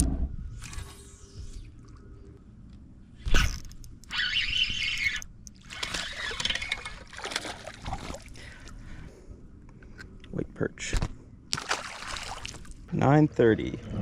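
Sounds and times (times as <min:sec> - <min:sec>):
water splashing: 0:05.6 - 0:08.4, 0:11.5 - 0:12.8.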